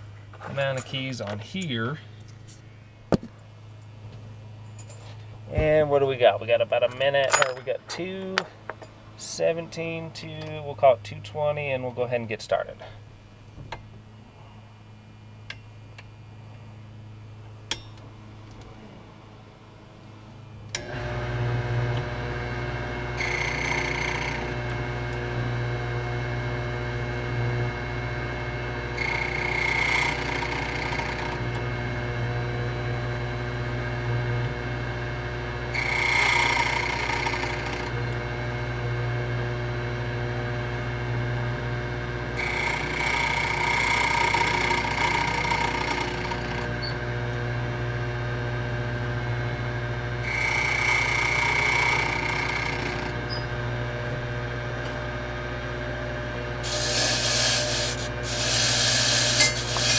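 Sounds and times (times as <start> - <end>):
key machine motor hum: 21.8 - 28.2, 28.8 - 39.0, 42.0 - 47.5, 50.1 - 55.2.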